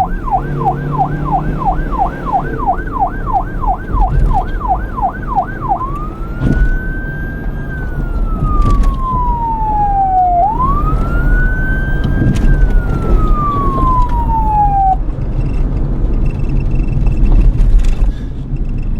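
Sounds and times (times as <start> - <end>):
police siren yelping and wailing: 0.0 - 15.0
low vehicle rumble: 0.0 - 18.9.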